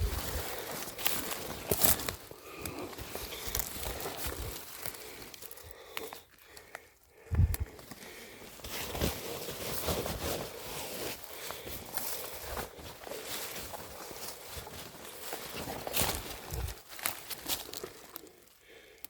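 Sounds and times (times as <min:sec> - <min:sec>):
footsteps crackling through leaves: 0:00.0 - 0:05.6, 0:08.8 - 0:18.2.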